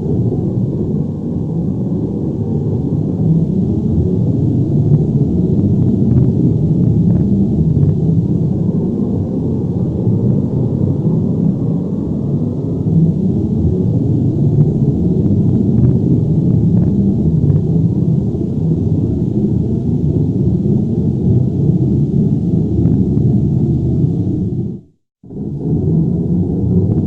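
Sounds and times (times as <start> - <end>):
deep low rumble: 0.0 - 27.0.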